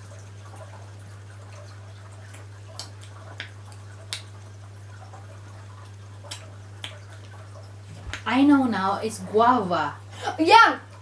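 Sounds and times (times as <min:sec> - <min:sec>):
wet mouth clicks and smacks: 0:02.2 - 0:04.4, 0:05.8 - 0:07.4, 0:08.0 - 0:08.3.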